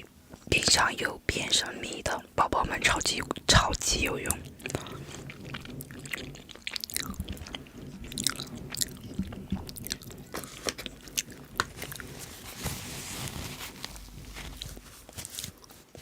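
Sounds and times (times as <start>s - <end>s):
person chewing noodles: 3.2s - 15.7s.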